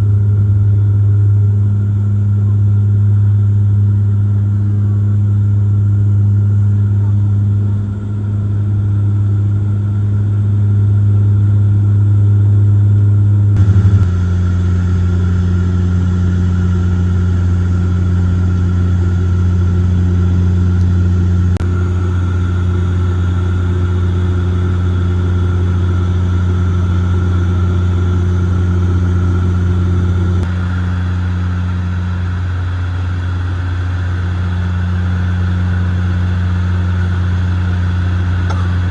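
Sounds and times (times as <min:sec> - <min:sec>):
low propeller and engine hum: 0:00.0 - 0:38.9
high engine whine: 0:13.5 - 0:38.9.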